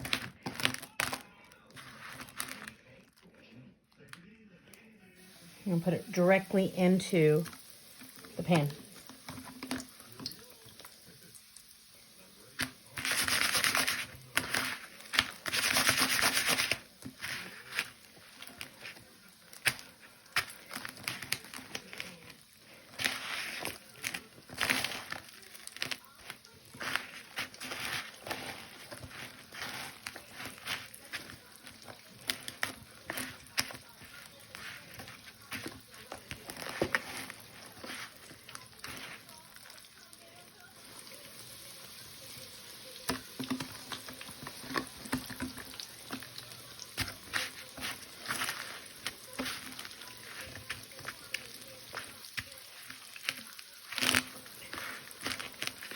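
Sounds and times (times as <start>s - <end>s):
oil crackling and popping: 0.0s - 55.9s
chicken sizzling in hot oil: 5.2s - 55.9s.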